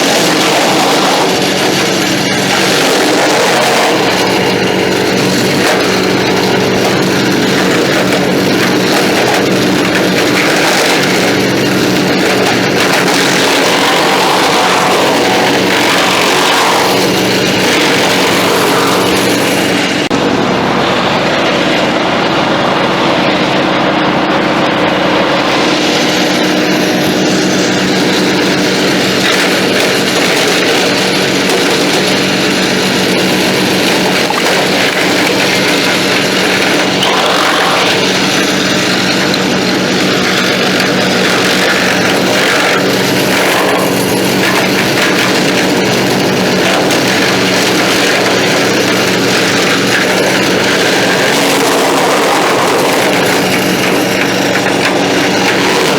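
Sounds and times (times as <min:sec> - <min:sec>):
wood chipper chipping: 0:00.0 - 0:55.9
wood chipper engine humming: 0:00.0 - 0:55.9.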